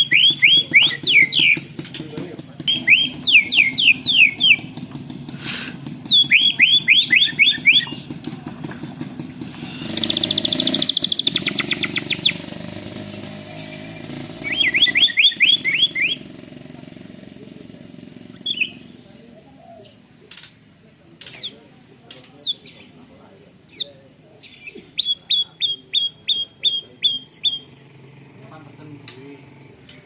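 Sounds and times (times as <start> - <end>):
bird singing whistled phrases: 0.0 - 1.7, 2.6 - 4.8, 6.0 - 8.2, 9.8 - 12.5, 13.4 - 16.4, 18.4 - 19.0, 23.7 - 27.7.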